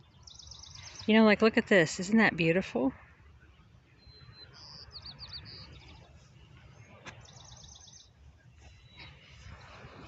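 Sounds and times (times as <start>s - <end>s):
small songbird singing: 0.0s - 1.4s, 3.5s - 6.5s, 7.2s - 9.8s.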